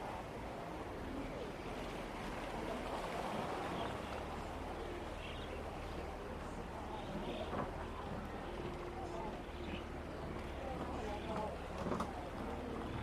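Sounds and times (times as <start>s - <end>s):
distant voices: 0.0s - 13.0s.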